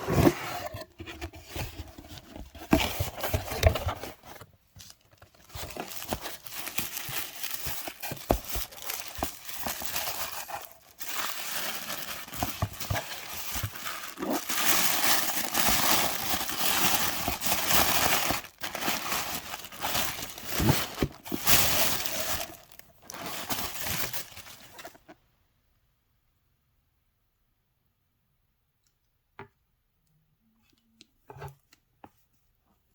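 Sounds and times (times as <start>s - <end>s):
paper and plastic crinkling: 0.7s - 25.1s.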